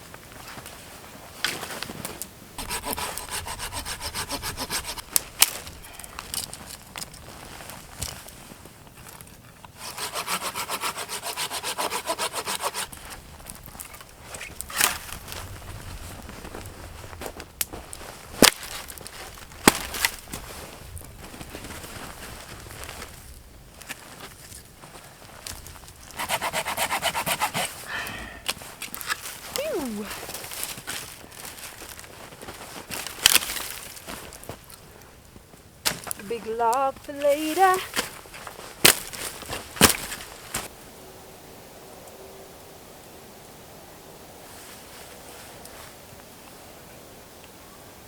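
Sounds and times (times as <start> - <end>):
firewood cracking: 1.4 - 27.0, 27.8 - 40.7
hand saw cutting wood: 2.6 - 6.5, 9.7 - 13.0, 26.1 - 27.9.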